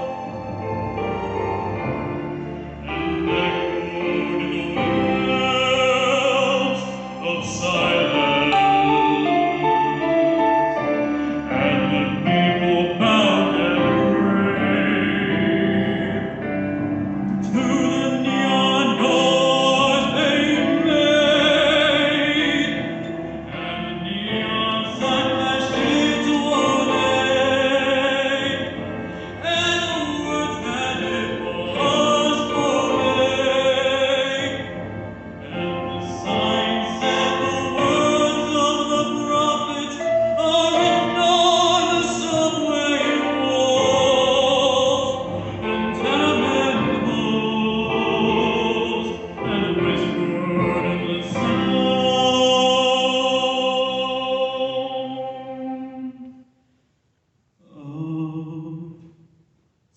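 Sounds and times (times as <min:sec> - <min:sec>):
piano and orchestral backing: 0:00.0 - 0:56.6
young male voice singing ballad: 0:17.4 - 0:34.7, 0:35.5 - 0:55.3.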